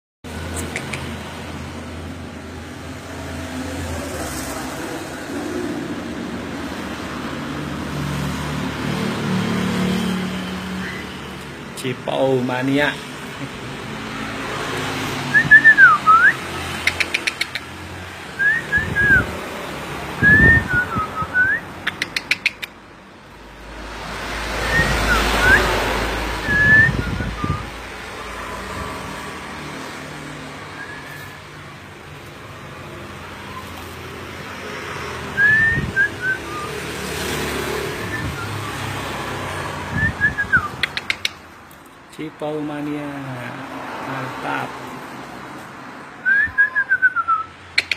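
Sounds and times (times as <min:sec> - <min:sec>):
bird whistled calls: 0:10.8 - 0:11.2, 0:15.3 - 0:17.6, 0:18.4 - 0:19.3, 0:20.2 - 0:22.7, 0:24.7 - 0:25.7, 0:26.4 - 0:27.8, 0:30.7 - 0:31.5, 0:35.4 - 0:36.9, 0:46.2 - 0:47.9.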